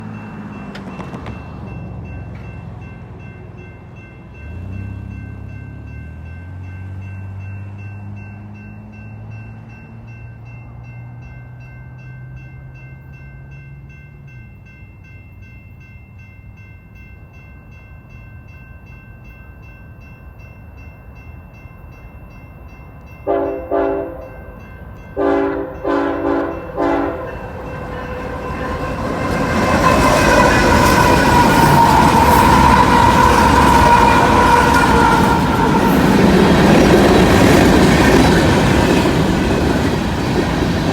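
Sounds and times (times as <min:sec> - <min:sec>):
train engines and wheels: 0:00.0 - 0:40.9
locomotive air horn blasts: 0:23.3 - 0:24.4, 0:25.2 - 0:36.3.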